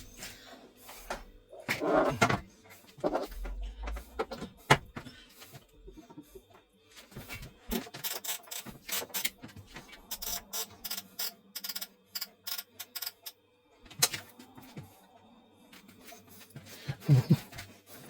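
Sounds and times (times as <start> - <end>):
kitchen clicks and clatter: 7.3 - 13.3.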